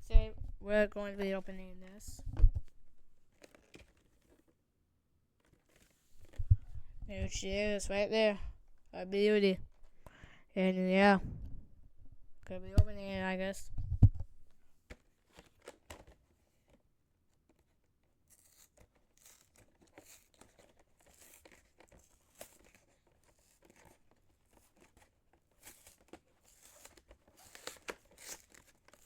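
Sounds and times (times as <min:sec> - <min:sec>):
wrapping tearing and crinkling: 0:03.3 - 0:04.5, 0:18.2 - 0:29.0.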